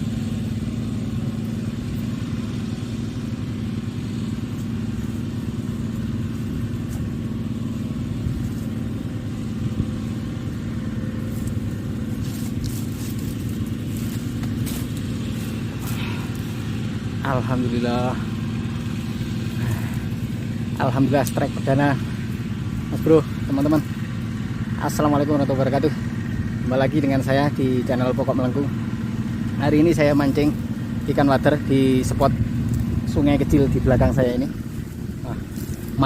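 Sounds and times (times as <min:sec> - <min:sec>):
motor running steadily: 0:00.0 - 0:36.0.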